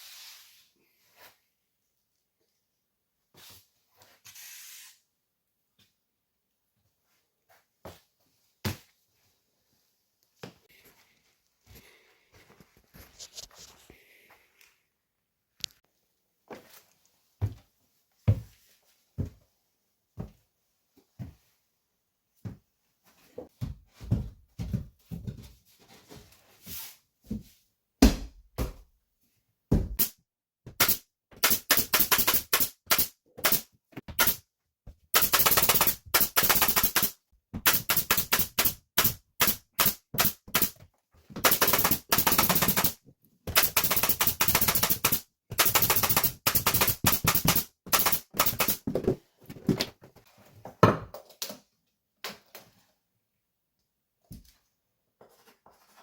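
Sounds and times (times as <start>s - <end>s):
power fastening tool rattling impacts: 30.8s - 33.6s, 34.2s - 34.4s, 35.2s - 40.8s, 41.4s - 48.8s.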